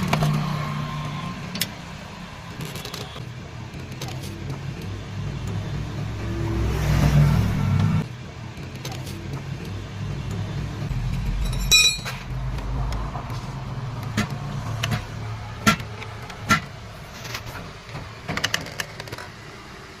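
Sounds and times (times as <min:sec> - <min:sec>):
ringing metallic clink: 0:11.4 - 0:12.2.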